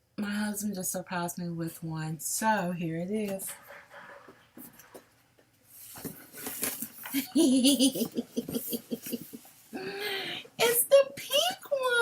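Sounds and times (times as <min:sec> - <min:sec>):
woman laughing and giggling: 0:07.1 - 0:10.0.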